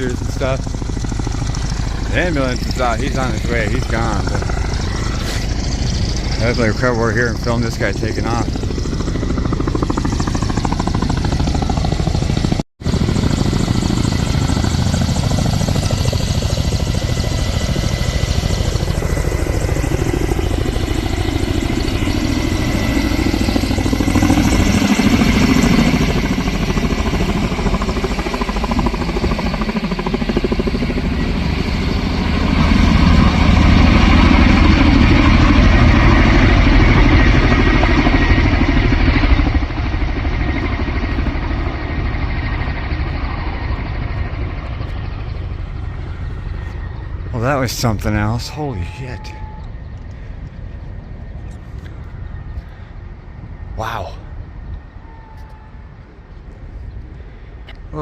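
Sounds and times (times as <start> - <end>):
helicopter rotor noise: 0.0 - 58.0
helicopter turbine whine: 0.0 - 58.0.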